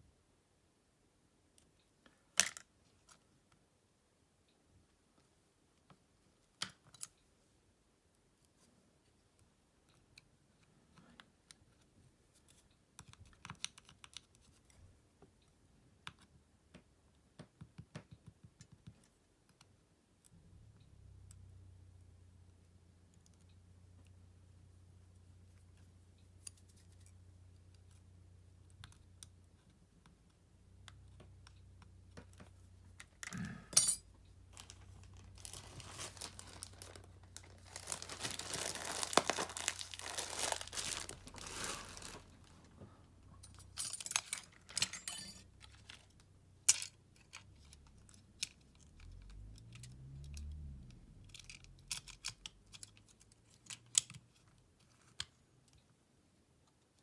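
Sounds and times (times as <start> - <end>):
light clicks and taps of tools: 8.4 - 24.2, 28.6 - 35.1, 43.3 - 56.0.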